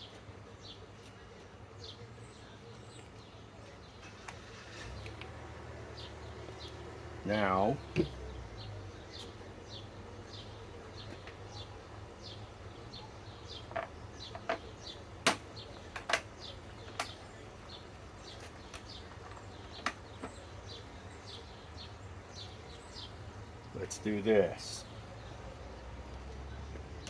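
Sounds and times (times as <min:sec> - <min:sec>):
bird chirping: 0:00.0 - 0:27.0
sharp clicks and knocks: 0:13.6 - 0:17.2.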